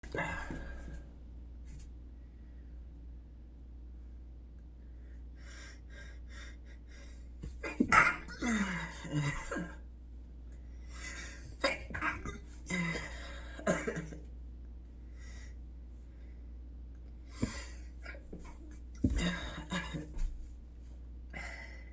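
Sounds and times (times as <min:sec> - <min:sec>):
man sneezing: 0:07.6 - 0:09.8.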